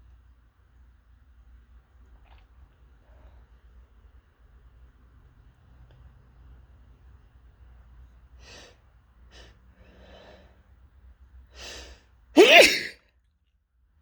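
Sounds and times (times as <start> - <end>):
person sneezing: 12.4 - 13.0.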